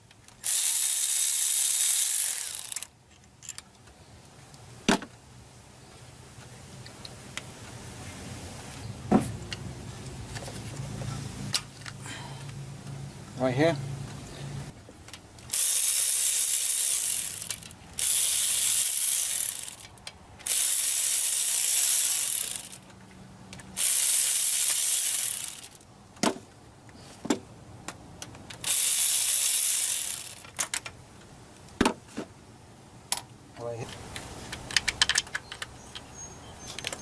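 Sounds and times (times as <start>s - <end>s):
ratchet wrench turning bolts: 0.4s - 2.9s, 15.5s - 22.8s, 23.7s - 25.8s, 28.6s - 30.7s.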